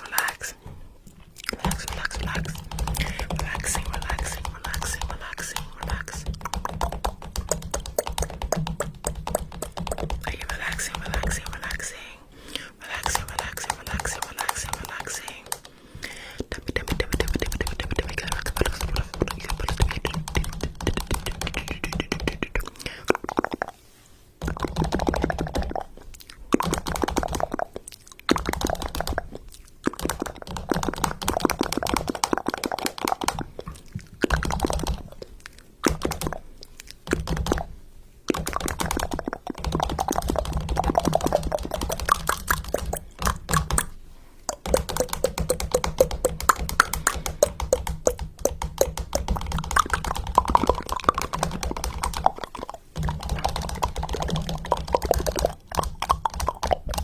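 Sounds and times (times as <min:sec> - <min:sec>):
rapid crackling clicks: 0:13.0 - 0:15.8, 0:16.5 - 0:23.5, 0:26.5 - 0:27.6, 0:28.3 - 0:29.2, 0:29.8 - 0:36.4, 0:38.3 - 0:57.0.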